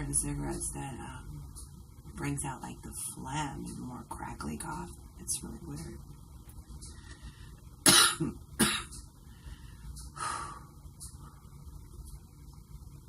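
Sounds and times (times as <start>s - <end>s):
woman coughing: 7.8s - 8.9s.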